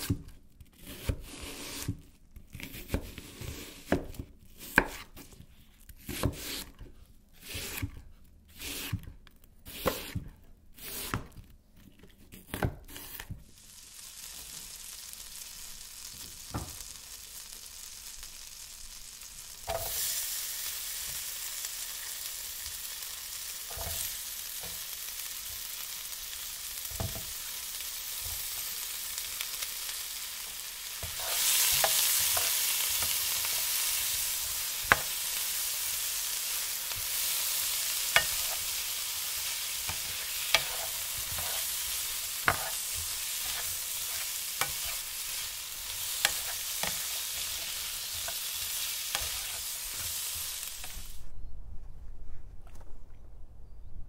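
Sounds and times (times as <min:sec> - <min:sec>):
food sizzling in a pan: 0:13.4 - 0:51.3.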